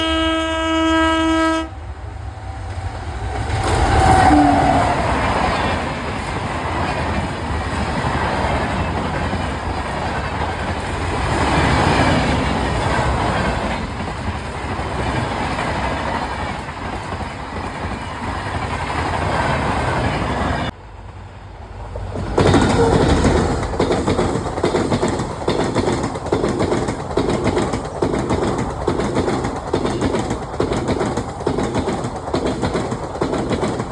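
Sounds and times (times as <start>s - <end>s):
train horn blast: 0.0s - 2.0s, 3.8s - 5.1s
train passing with rumbling rush: 0.0s - 33.9s
wheels clattering over rail joints: 21.8s - 33.9s.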